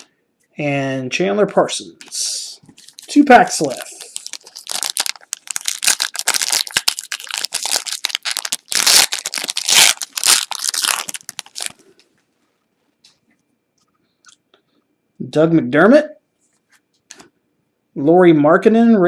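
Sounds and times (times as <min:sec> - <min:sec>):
foil wrapper tearing and crinkling: 0:02.8 - 0:11.8.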